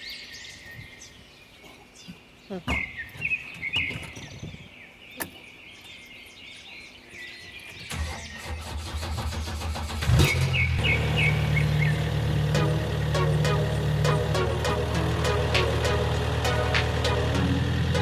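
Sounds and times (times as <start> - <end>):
birds chirping: 0.0 - 18.0
backhoe loader engine idling: 10.4 - 18.0.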